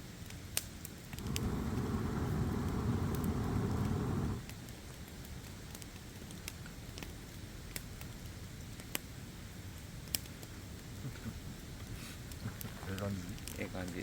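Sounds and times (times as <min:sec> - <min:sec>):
campfire crackling: 0:00.0 - 0:14.0
fire popping: 0:00.2 - 0:14.0.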